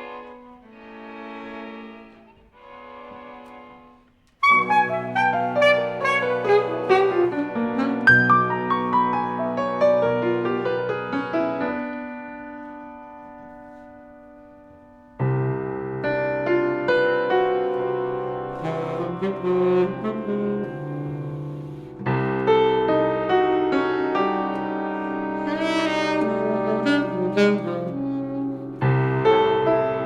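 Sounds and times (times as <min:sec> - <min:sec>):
jazz band playing: 0:04.4 - 0:08.7, 0:18.5 - 0:21.9, 0:25.4 - 0:29.2
piano chord: 0:04.4 - 0:13.2, 0:13.9 - 0:30.0.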